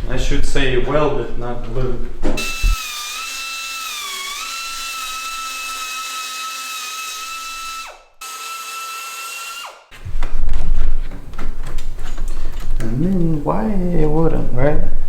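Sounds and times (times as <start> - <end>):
power tool high whine: 2.4 - 10.0.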